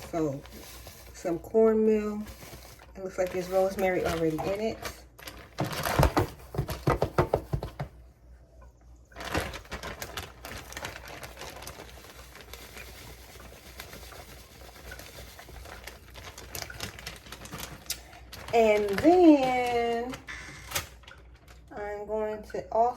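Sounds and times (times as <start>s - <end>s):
cornmeal grains pattering: 9.3s - 20.1s.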